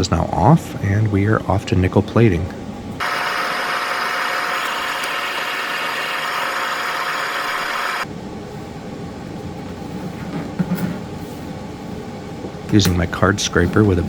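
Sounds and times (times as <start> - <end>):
mechanical whirring hiss: 3.0 - 8.1.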